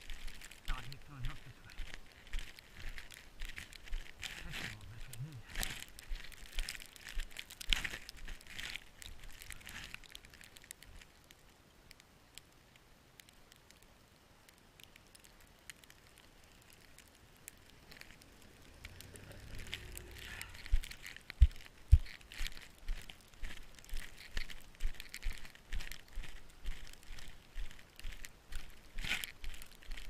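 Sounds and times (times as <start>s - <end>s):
footsteps crunching in snow: 0.0s - 10.4s, 17.9s - 30.0s
low rumble: 18.4s - 21.5s.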